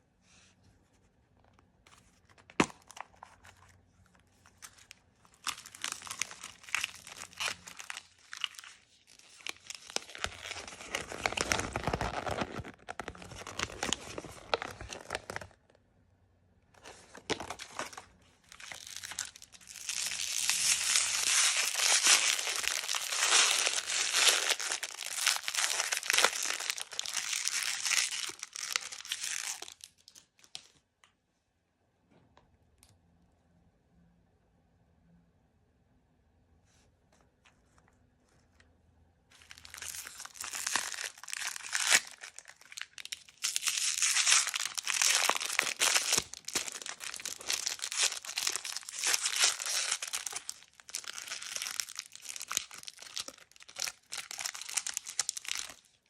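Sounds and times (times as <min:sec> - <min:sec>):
packaging crinkling and tearing: 0:04.4 - 0:15.6, 0:16.8 - 0:30.7, 0:39.4 - 0:56.0.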